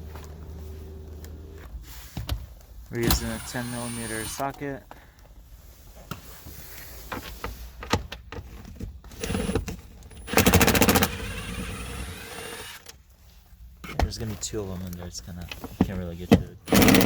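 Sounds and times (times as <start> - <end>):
fast rattling clicks: 9.2 - 12.9, 16.7 - 17.0.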